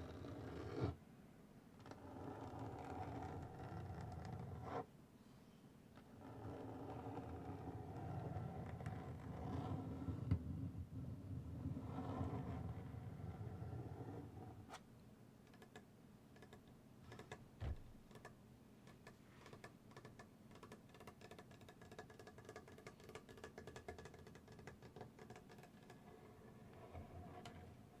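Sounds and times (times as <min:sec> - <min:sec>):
low thump: 0:17.6 - 0:17.9.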